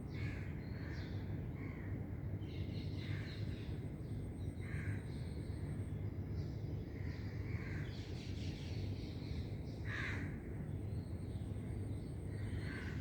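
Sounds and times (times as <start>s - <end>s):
crow cawing: 9.9s - 10.3s.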